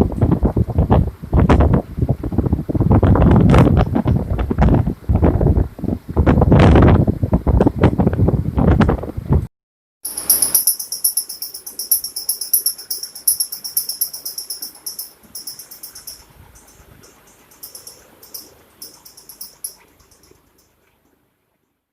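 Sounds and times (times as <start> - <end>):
ceiling fan squeaking: 10.1 - 20.7.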